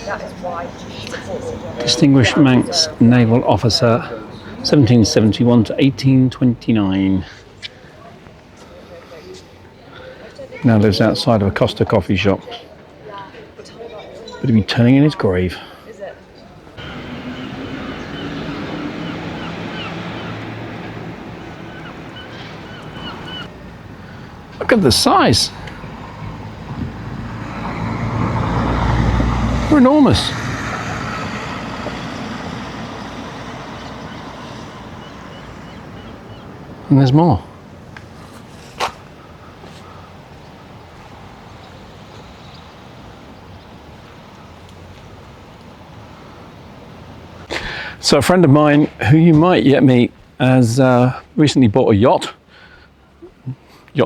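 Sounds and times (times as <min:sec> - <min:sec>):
street ambience: 0:00.0 - 0:54.0
short chirping calls: 0:16.8 - 0:23.5.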